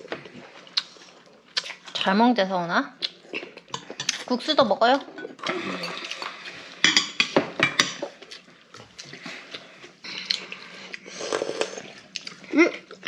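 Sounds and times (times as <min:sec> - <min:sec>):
tableware clinking: 0:05.2 - 0:08.0.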